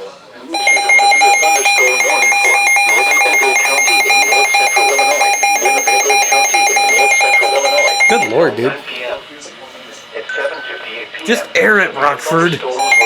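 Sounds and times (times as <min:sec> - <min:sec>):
broadcast voice: 0:00.5 - 0:09.0, 0:10.6 - 0:13.0
weather radio alert tones: 0:00.6 - 0:08.4, 0:12.8 - 0:13.0.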